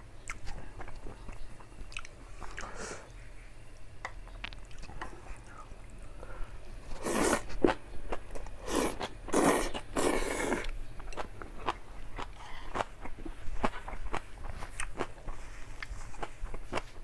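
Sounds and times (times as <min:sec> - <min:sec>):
noisy eating mouthfuls: 0:06.8 - 0:17.0.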